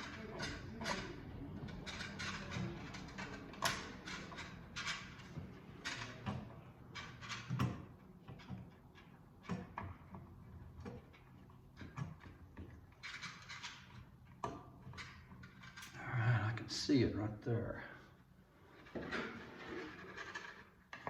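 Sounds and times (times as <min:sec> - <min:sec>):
cable scraping in wall: 0:18.6 - 0:21.0.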